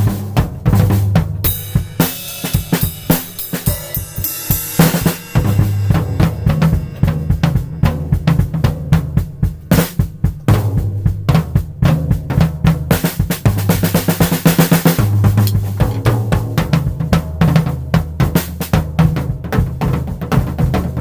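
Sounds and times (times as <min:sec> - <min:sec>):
acoustic drum kit groove: 0:00.0 - 0:21.0
cymbal crashes: 0:01.5 - 0:08.5
distorted hi-hat: 0:01.5 - 0:11.4.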